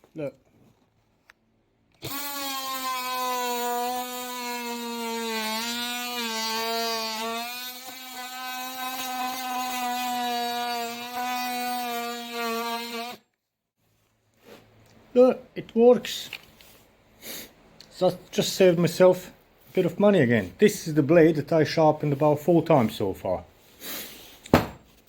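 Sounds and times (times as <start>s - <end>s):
oscillating multi-tool buzzing: 2.0s - 13.2s.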